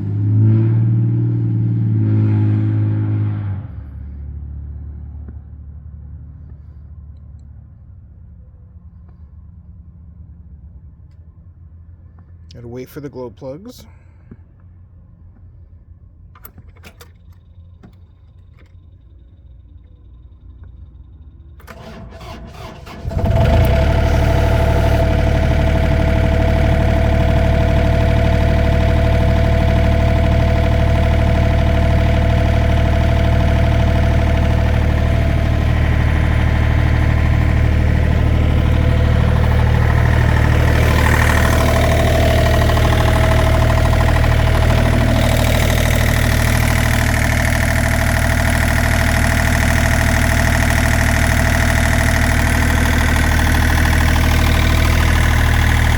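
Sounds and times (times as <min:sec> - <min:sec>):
diesel engine idling: 0:17.1 - 0:55.9
starter motor cranking: 0:21.6 - 0:55.9.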